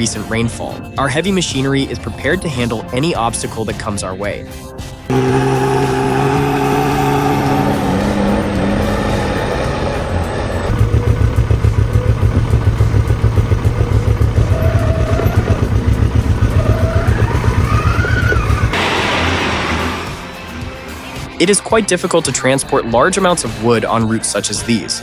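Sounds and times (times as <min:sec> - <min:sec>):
truck diesel engine labouring: 0:05.0 - 0:24.6.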